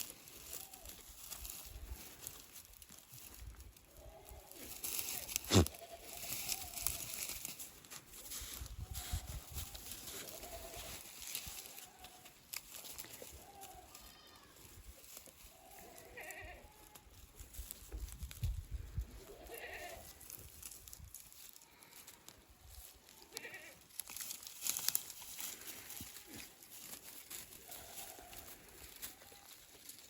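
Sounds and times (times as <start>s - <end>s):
goats bleating: 3.8s - 7.2s, 9.9s - 12.3s, 13.1s - 14.8s, 15.5s - 17.0s, 19.2s - 20.3s, 23.1s - 24.1s.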